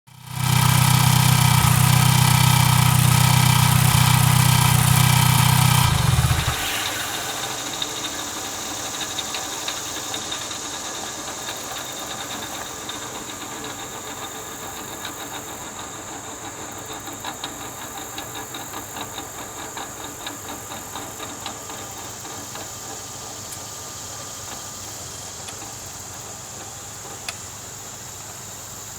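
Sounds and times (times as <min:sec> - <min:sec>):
car engine running: 0:00.1 - 0:08.7
turbocharger whine: 0:00.1 - 0:09.0.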